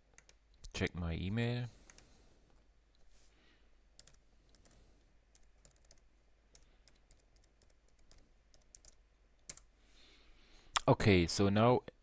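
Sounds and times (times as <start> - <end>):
keyboard typing: 0.1 - 0.6, 4.0 - 9.7.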